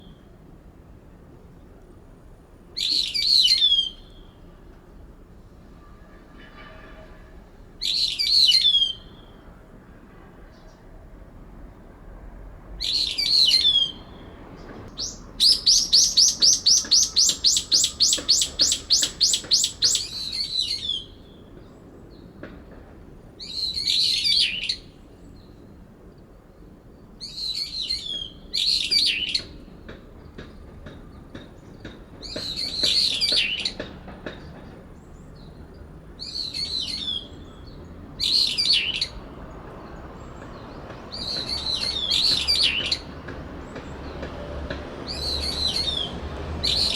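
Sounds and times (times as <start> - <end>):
shrill bird calls: 2.8 - 4.4, 7.8 - 9.4, 12.8 - 14.3, 14.9 - 21.5, 23.4 - 24.9, 27.2 - 29.6, 32.2 - 33.8, 36.2 - 39.2, 41.1 - 43.1, 45.1 - 46.9
rapid repeated bird notes: 14.9 - 21.1, 28.0 - 34.8.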